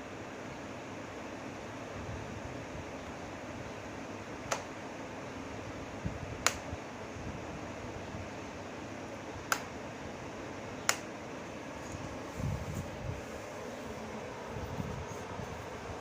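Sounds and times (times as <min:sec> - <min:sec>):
fan heater blowing: 0:00.0 - 0:16.0
sharp clicks: 0:06.4 - 0:06.6, 0:09.5 - 0:09.7, 0:10.8 - 0:11.1.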